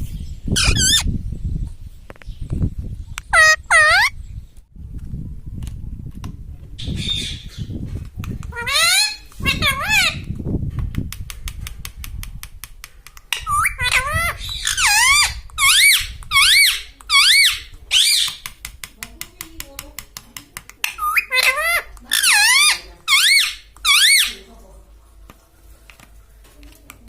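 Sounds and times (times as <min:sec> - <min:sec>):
parakeet squawking: 0:00.6 - 0:01.1, 0:03.3 - 0:04.2, 0:08.5 - 0:10.2, 0:13.4 - 0:18.4, 0:20.9 - 0:24.4.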